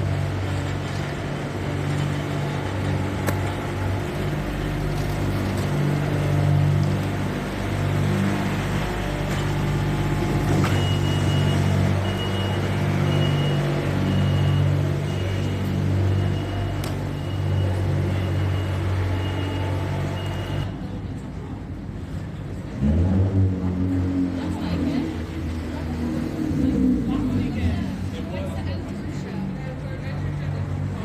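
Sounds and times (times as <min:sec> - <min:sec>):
large vehicle engine idling: 0:00.0 - 0:22.8, 0:23.8 - 0:31.0
low engine rumble: 0:00.0 - 0:31.0
high-pitched warning beeps: 0:10.6 - 0:20.7.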